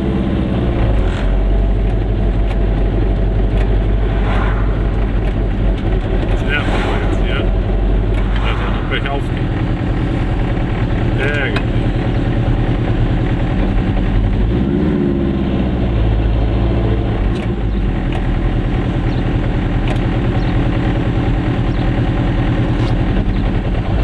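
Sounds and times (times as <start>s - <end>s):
two-stroke engine running: 7.5s - 24.0s.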